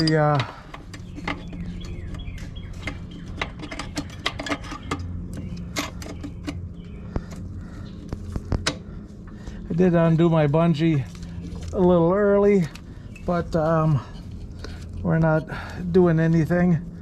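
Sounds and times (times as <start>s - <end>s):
small metallic clicks and taps: 0.0s - 8.8s
steady low hum: 0.0s - 17.0s.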